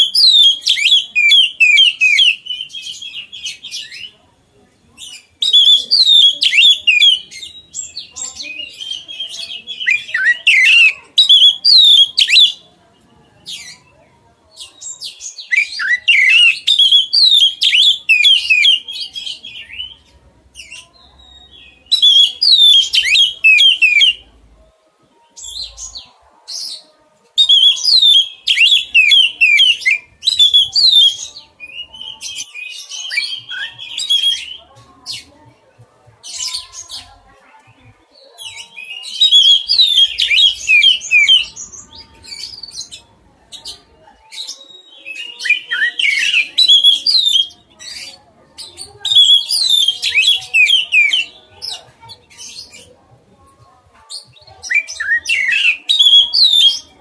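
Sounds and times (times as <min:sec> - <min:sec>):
bird singing whistled notes: 0:00.0 - 0:04.1, 0:05.1 - 0:12.6, 0:14.8 - 0:20.0, 0:20.6 - 0:24.2, 0:27.4 - 0:34.6, 0:38.4 - 0:43.0, 0:43.6 - 0:48.1, 0:49.1 - 0:51.4, 0:54.7 - 0:56.9.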